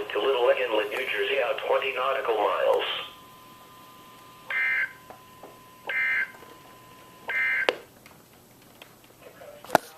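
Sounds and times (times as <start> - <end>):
harsh digital squawks: 4.5 - 5.0.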